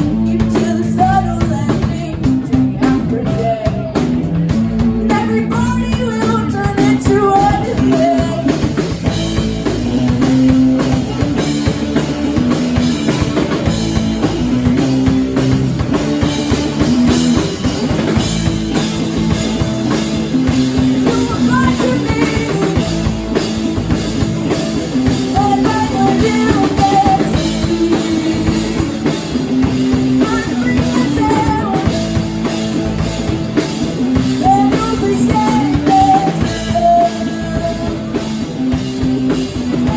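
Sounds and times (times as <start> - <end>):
person singing: 0.0 - 4.2, 4.9 - 8.8, 20.4 - 23.1, 25.0 - 32.1, 34.2 - 38.5
drum kit: 0.0 - 39.9
electric guitar: 0.0 - 39.9.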